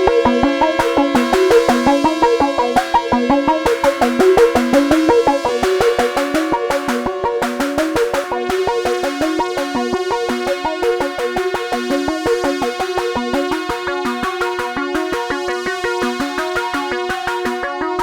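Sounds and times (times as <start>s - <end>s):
fast hi-hat ticking: 0.0s - 16.6s
synth pad: 0.0s - 17.0s
sawtooth synth sequence: 0.0s - 17.5s.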